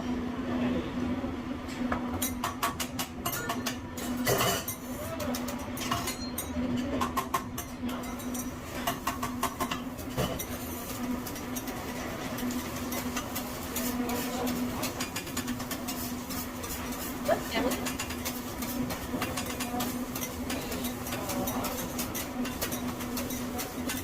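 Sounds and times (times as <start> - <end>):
metal spatulas scraping griddle: 10.0 - 24.0.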